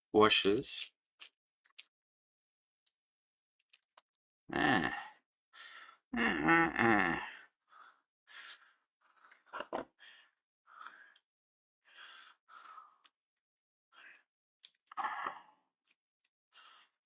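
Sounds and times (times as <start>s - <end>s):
man groaning: 4.5s - 5.2s, 6.2s - 7.4s
faint breathing: 10.0s - 11.2s, 11.8s - 13.1s.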